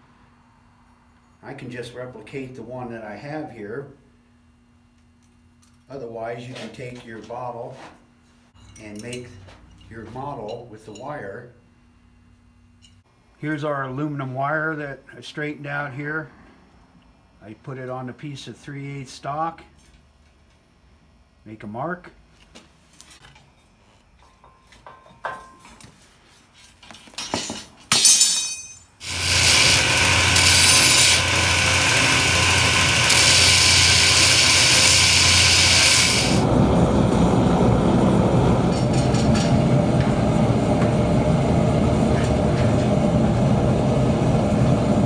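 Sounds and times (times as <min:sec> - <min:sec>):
power tool cutting steel: 0:29.0 - 0:36.5.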